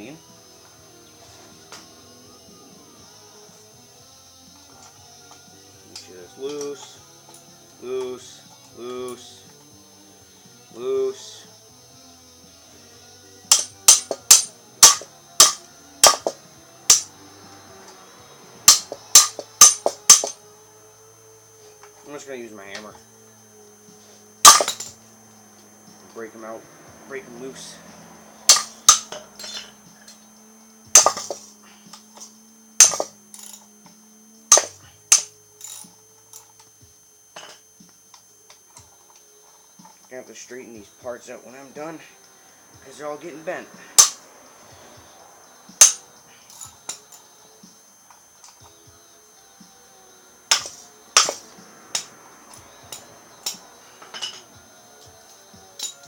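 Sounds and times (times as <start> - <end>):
hammer striking metal: 13.5 - 17.1, 18.6 - 20.4, 24.4 - 25.0, 28.5 - 30.2, 30.9 - 31.6, 32.8 - 33.6, 34.5 - 35.8, 44.0 - 44.2, 45.8 - 46.0, 50.5 - 52.1
hammer tapping on metal: 18.7 - 20.4.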